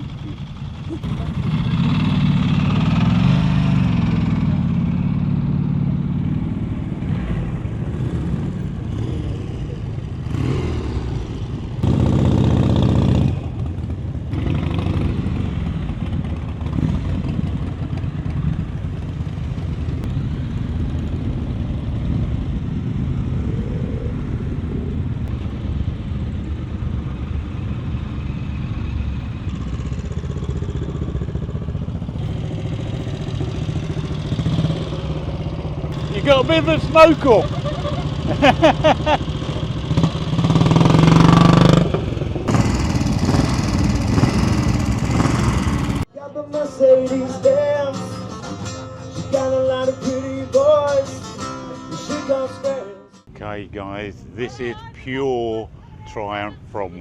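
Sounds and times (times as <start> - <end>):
loud motorcycle engine revving: 0.0 - 18.5, 29.5 - 46.1
motorcycle engines idling: 0.0 - 23.2, 24.2 - 54.1.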